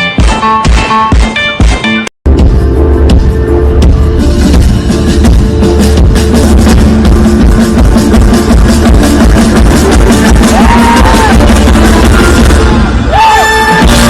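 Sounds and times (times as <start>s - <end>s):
rock music with drums and guitar: 0.0s - 14.0s.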